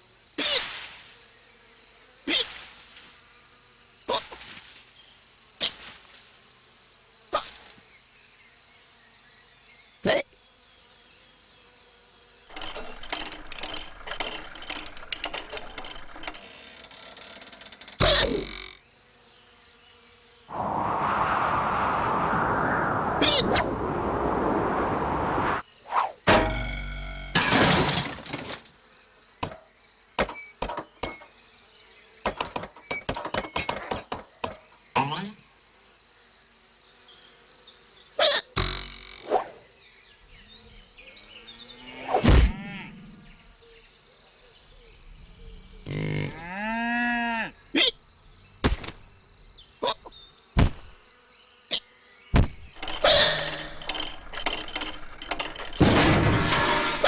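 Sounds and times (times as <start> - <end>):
sharp clicks and knocks: 12.5 - 18.7, 30.2 - 31.3, 32.3 - 34.8, 52.4 - 57.0.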